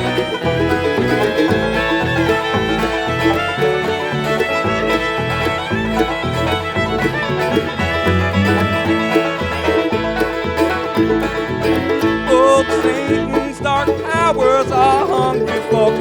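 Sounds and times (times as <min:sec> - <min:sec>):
banjo: 0:00.0 - 0:16.0
bluegrass band playing: 0:00.0 - 0:16.0
fiddle: 0:00.0 - 0:16.0
walking bass line: 0:00.0 - 0:16.0.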